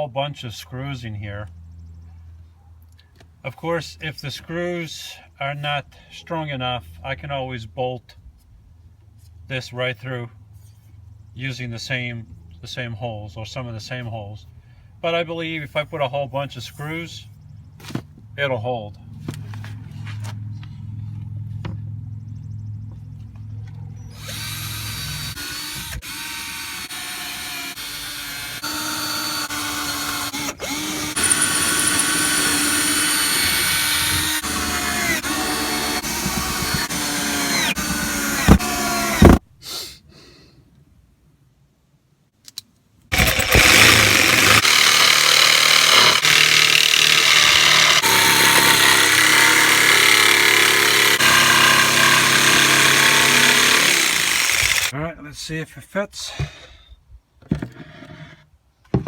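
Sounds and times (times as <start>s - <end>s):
power drill driving screws into wood: 24.2s - 39.4s, 43.1s - 54.9s.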